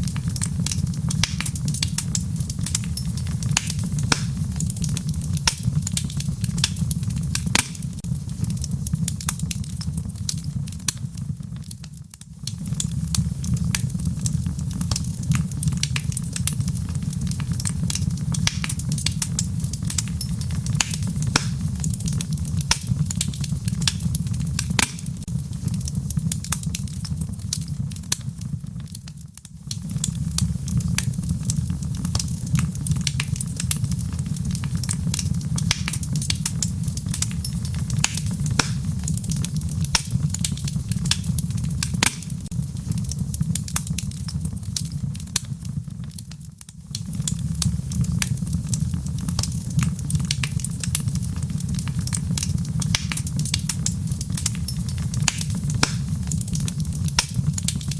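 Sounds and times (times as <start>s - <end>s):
wood fire crackling: 0.0s - 57.9s.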